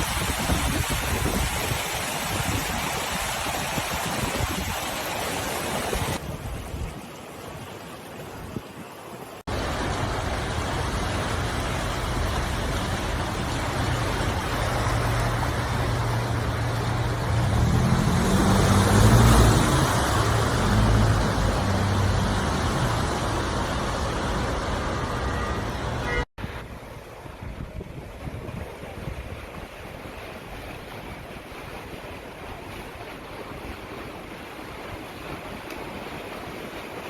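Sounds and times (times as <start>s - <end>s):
vehicle engine humming: 9.5s - 26.2s
steady rushing noise: 9.5s - 29.2s.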